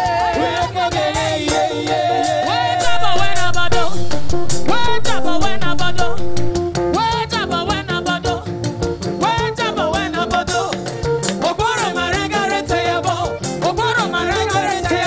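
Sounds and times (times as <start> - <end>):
choir singing: 0.0 - 6.3, 11.6 - 15.0
latin percussion beat: 0.0 - 15.0
live band playing: 0.0 - 15.0.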